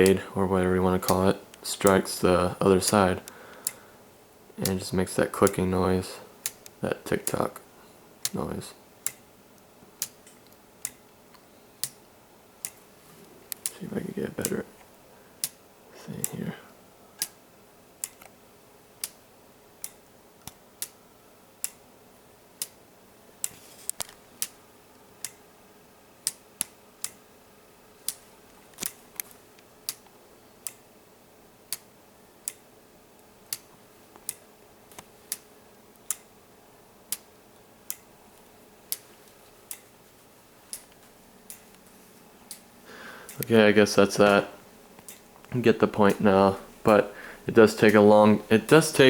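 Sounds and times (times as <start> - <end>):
clock ticking: 1.0 - 2.2, 19.8 - 21.0, 21.6 - 21.8, 42.4 - 49.0.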